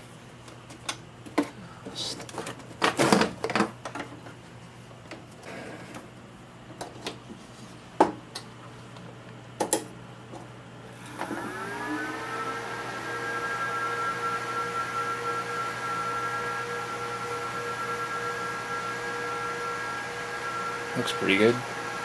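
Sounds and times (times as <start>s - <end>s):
network switch whine: 10.6s - 22.0s.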